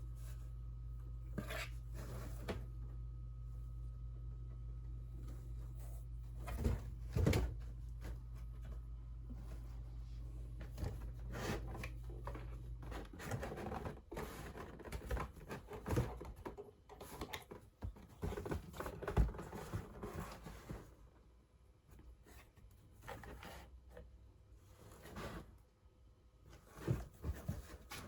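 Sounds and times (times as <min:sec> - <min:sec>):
low hum: 0:00.0 - 0:13.0
kitten scratching cardboard: 0:01.2 - 0:02.8.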